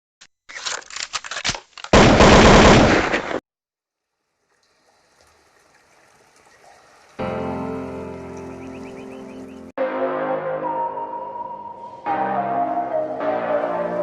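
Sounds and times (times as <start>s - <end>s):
gunfire-like bursts: 2.0s - 3.4s.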